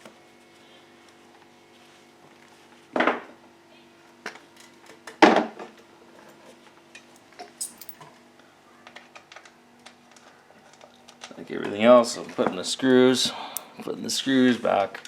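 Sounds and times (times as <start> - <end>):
metal tools clanking: 7.6 - 8.0.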